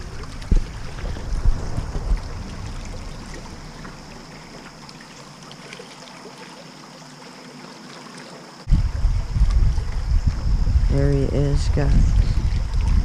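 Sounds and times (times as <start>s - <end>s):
loud low rumble: 0.0s - 5.4s
creek water running: 0.0s - 13.0s.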